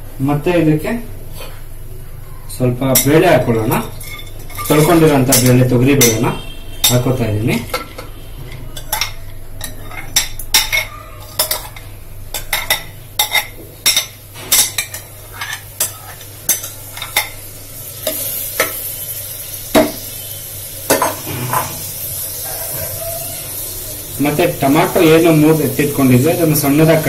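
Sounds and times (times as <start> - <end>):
spoon scraping a pot: 3.7 - 17.4
faint oil sizzle: 8.0 - 27.0.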